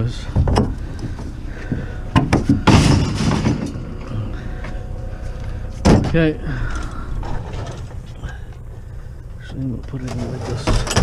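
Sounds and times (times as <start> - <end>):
hard clunk: 0.3 - 4.1, 5.8 - 6.3.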